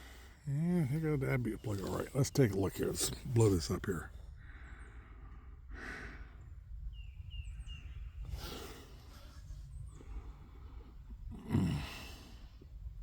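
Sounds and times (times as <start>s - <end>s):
faint high bird chirps: 6.4s - 10.0s
man breathing out heavily: 11.3s - 12.6s.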